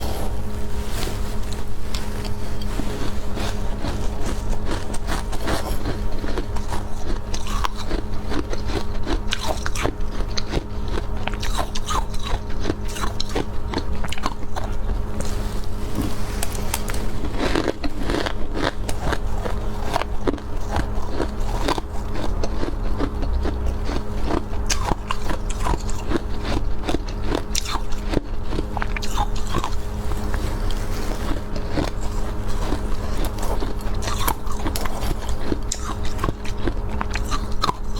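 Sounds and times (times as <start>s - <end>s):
chewing crunchy frost: 0.0s - 37.9s.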